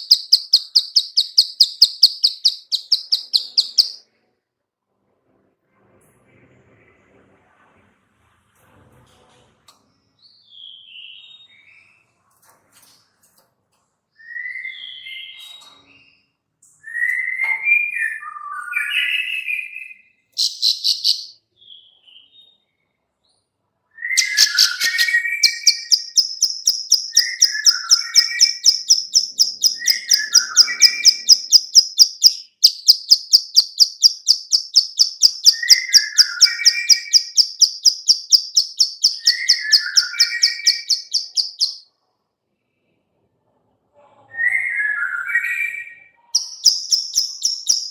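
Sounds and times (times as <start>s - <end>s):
bird chirping: 0.0s - 4.0s, 14.2s - 23.4s, 24.0s - 42.0s, 44.5s - 47.9s
fast high bird clicks: 46.4s - 47.9s.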